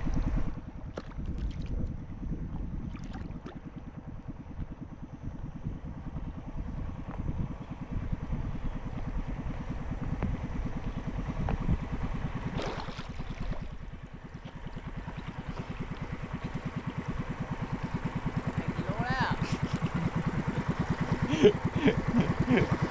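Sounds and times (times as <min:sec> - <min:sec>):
boat engine running: 0:00.0 - 0:22.9.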